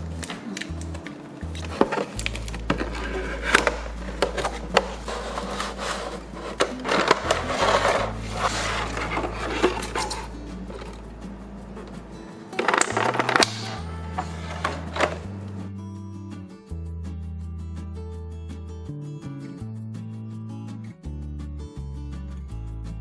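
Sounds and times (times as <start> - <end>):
background music: 0.0 - 23.0
packaging rustling: 0.1 - 11.0.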